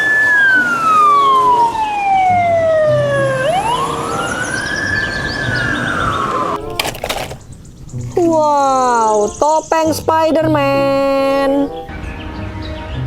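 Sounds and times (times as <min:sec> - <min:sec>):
fire engine siren wailing: 0:00.0 - 0:06.6.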